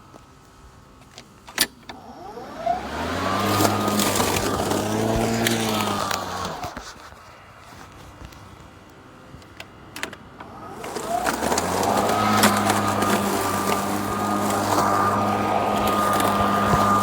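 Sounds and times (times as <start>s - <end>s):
machine hum: 10.4s - 17.0s.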